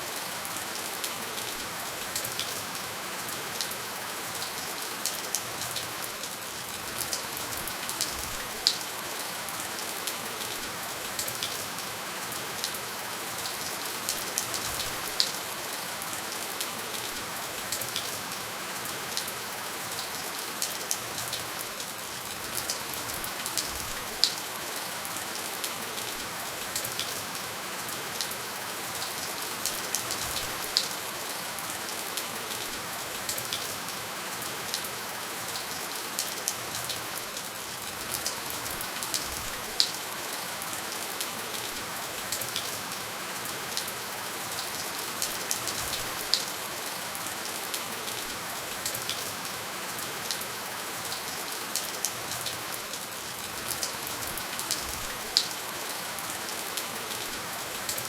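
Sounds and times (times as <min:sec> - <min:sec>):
raindrops pattering on a surface: 0:00.0 - 0:58.0
steady rainfall hiss: 0:00.0 - 0:58.0.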